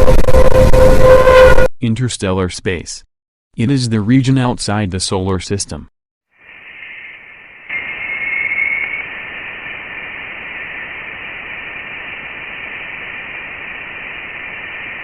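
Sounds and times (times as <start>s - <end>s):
faint high steady tones: 6.4s - 15.0s
static-like hiss: 6.4s - 15.0s.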